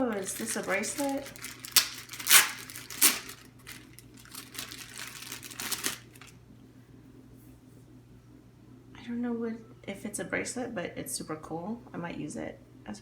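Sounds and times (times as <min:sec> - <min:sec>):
hands clicking and rustling: 0:00.0 - 0:06.3.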